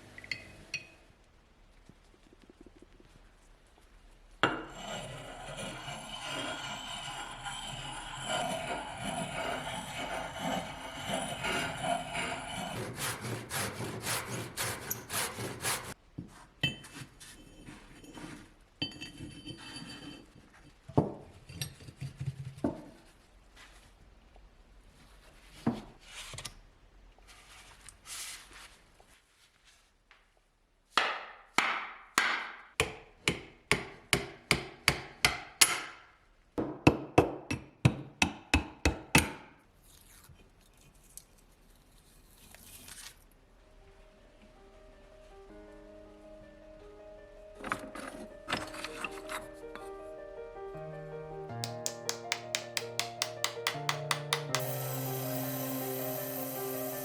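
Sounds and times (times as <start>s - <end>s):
rubbing strokes on wood: 4.7s - 16.0s, 51.6s - 57.0s
sharp hammer-like knocks: 51.6s - 55.0s.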